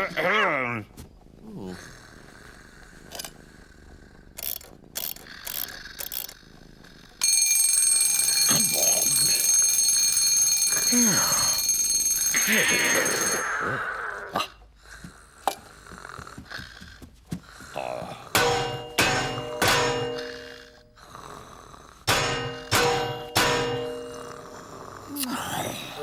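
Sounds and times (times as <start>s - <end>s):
alarm clock ringing: 7.2s - 14.0s, 18.4s - 21.0s, 22.1s - 25.1s.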